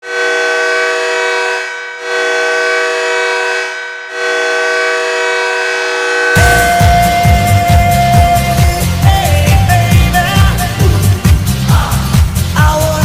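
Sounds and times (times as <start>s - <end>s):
goal horn blasts: 0.0s - 9.3s
goal song with heavy beat: 6.3s - 13.0s.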